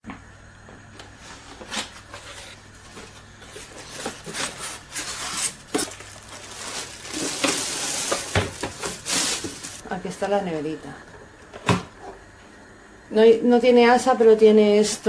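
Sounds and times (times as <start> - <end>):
packaging rustling: 3.5 - 9.8.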